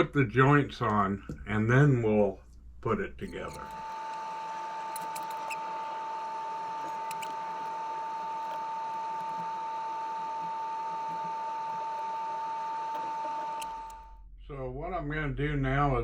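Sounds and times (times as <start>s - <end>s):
small parts clicking: 4.8s - 5.6s, 6.8s - 7.8s, 12.9s - 14.0s.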